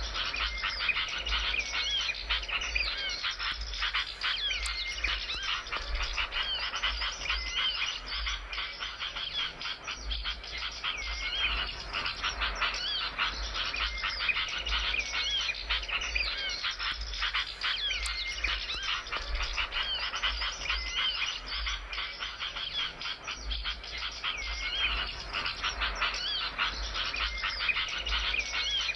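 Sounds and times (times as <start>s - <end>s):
songbirds chirping and twittering: 0.0s - 28.9s.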